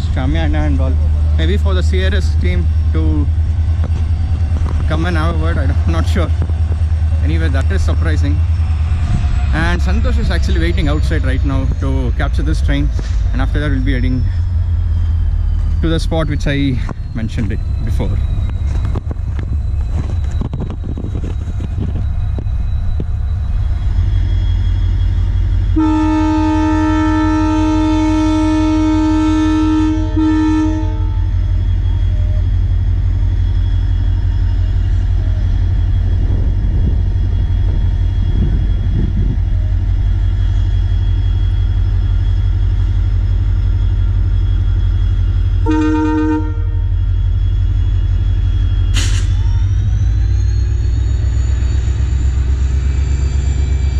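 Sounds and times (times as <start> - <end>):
train rumbling: 0.0 - 53.9
train horn: 25.7 - 31.4, 45.6 - 47.0.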